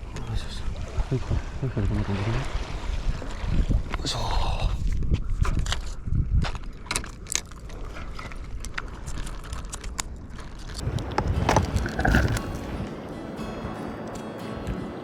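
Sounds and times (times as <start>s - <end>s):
wind rumble on microphone: 0.0s - 13.7s
fish and tackle knocking: 10.8s - 12.8s.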